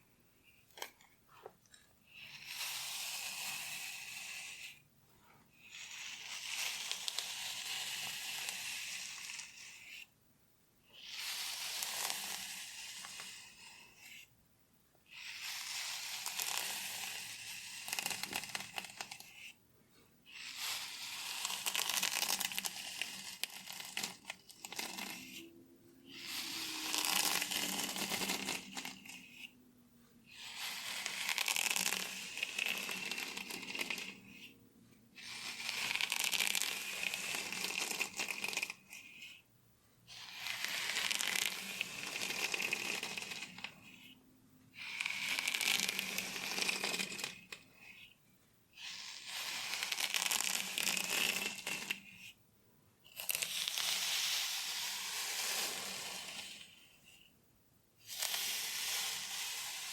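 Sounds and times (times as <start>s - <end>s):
fingernails scratching through hair: 11.2s - 14.3s, 15.3s - 19.6s, 20.4s - 25.5s, 26.1s - 29.6s, 30.3s - 34.6s, 35.3s - 39.4s, 40.1s - 44.2s, 44.9s - 48.1s, 48.8s - 52.3s.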